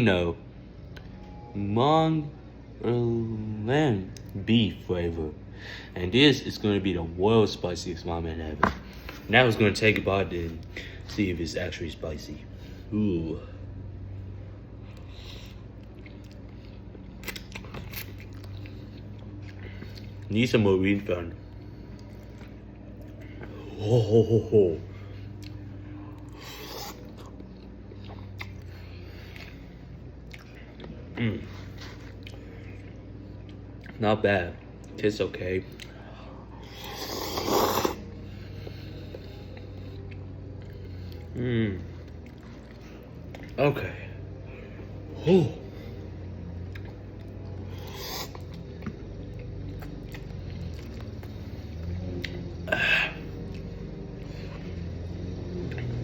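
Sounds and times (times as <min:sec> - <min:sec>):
low hum: 0:00.0 - 0:56.0
person chewing noodles: 0:14.8 - 0:20.3, 0:21.4 - 0:24.2, 0:24.9 - 0:34.0, 0:35.7 - 0:43.6, 0:44.8 - 0:56.0
mouth eating noises: 0:21.9 - 0:29.6, 0:36.6 - 0:38.1, 0:46.6 - 0:53.8.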